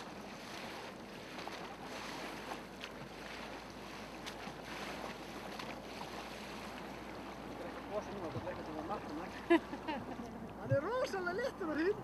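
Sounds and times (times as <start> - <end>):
water lapping around boat: 0.0 - 12.0.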